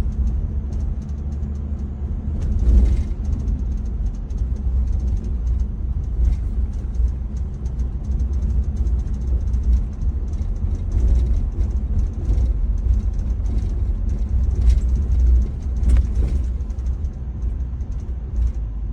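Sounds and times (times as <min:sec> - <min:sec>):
cabin trim ticking and rattling: 0:00.0 - 0:18.6
low road rumble: 0:00.0 - 0:18.9.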